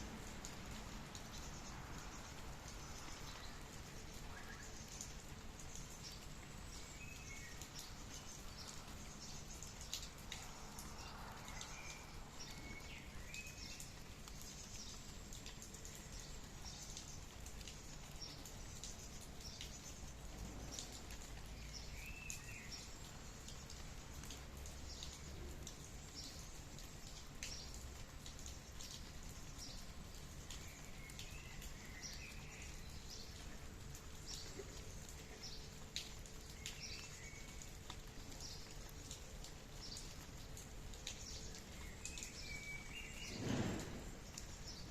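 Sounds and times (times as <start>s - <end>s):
light rain pattering: 0.0s - 44.9s.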